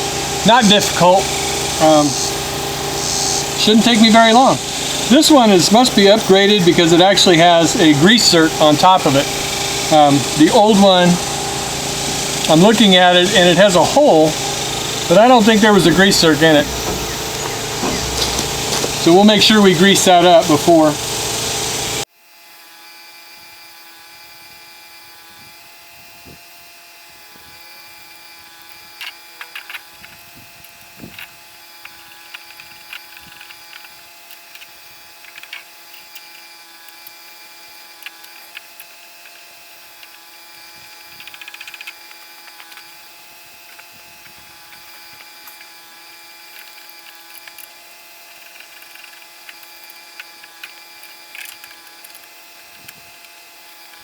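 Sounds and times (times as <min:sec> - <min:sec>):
steady hum: 0:00.0 - 0:22.0.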